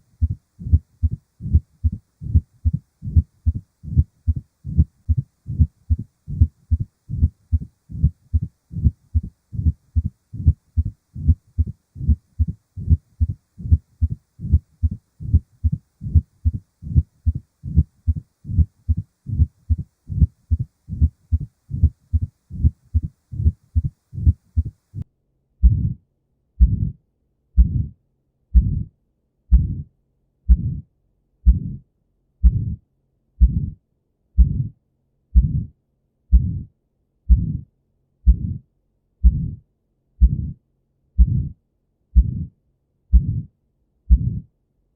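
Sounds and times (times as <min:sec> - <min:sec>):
faint hum: 0:00.0 - 0:25.0
heartbeat thumps: 0:00.2 - 0:24.8, 0:25.6 - 0:26.0, 0:26.6 - 0:27.0, 0:27.6 - 0:28.9, 0:29.5 - 0:29.9, 0:30.5 - 0:30.9, 0:31.5 - 0:31.8, 0:32.4 - 0:32.8, 0:33.4 - 0:33.8, 0:34.4 - 0:34.8, 0:35.4 - 0:35.7, 0:36.3 - 0:36.7, 0:37.3 - 0:37.7, 0:38.3 - 0:38.6, 0:39.2 - 0:39.6, 0:40.2 - 0:40.6, 0:41.2 - 0:41.6, 0:42.2 - 0:43.5, 0:44.1 - 0:44.5.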